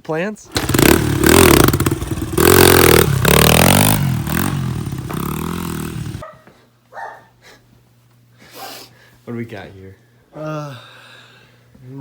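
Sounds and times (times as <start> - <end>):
loud rattling clatter: 0.5 - 6.2
vehicle engine revving: 0.5 - 6.2.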